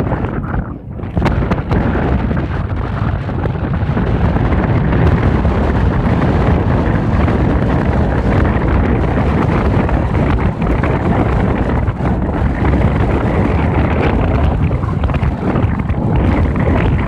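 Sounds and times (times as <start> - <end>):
road noise: 0.0 - 17.0
wind buffeting microphone: 0.0 - 17.0.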